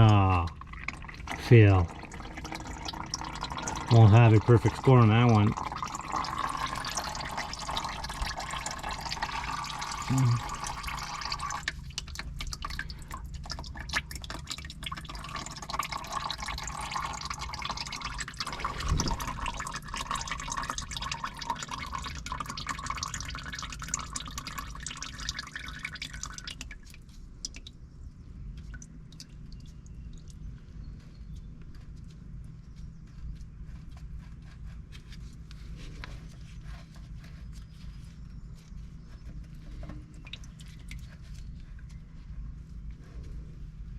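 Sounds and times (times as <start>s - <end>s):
oil trickling into pan: 0.0s - 27.7s.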